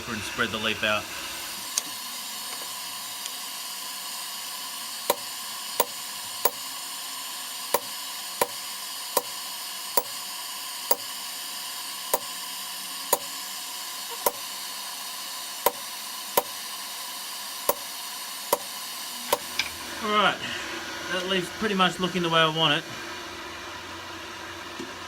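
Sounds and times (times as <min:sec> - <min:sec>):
steady hiss: 0:00.0 - 0:20.4
hammer striking steel on anvil: 0:05.1 - 0:06.6, 0:07.8 - 0:08.6, 0:09.2 - 0:09.4, 0:10.0 - 0:10.2, 0:10.9 - 0:11.1, 0:12.1 - 0:12.4, 0:13.1 - 0:13.4, 0:14.1 - 0:14.5, 0:15.7 - 0:16.6, 0:17.7 - 0:17.9, 0:18.5 - 0:19.7.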